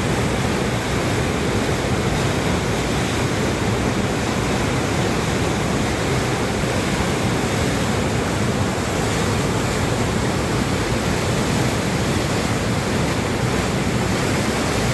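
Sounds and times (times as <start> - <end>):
waterfall rushing: 0.0 - 14.9.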